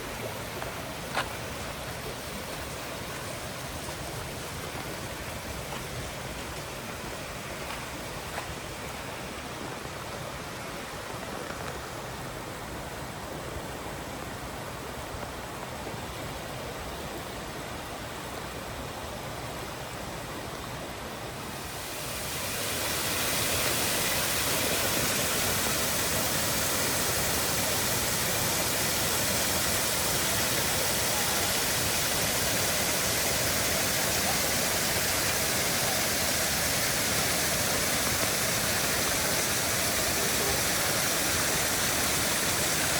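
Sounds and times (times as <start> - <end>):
waterfall rushing: 20.6 - 42.9.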